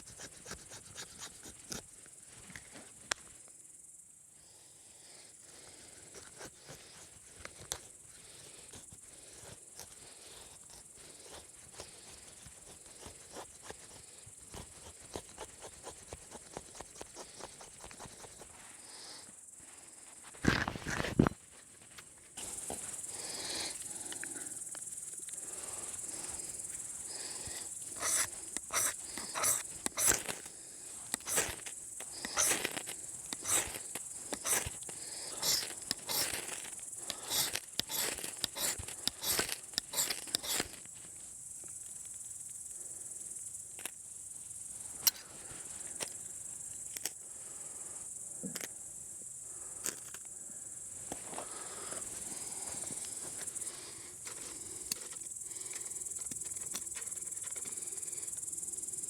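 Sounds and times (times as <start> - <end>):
crickets chirping: 0.0 - 59.0
sharp crackles and pops: 26.2 - 41.0.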